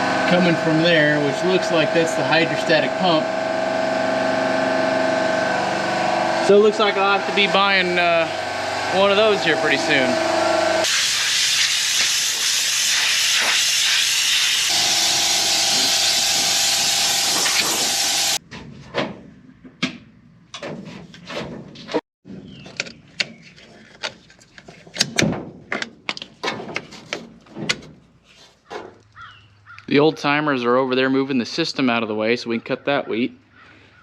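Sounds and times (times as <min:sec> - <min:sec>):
compressed air blow gun hissing: 0:10.8 - 0:18.4.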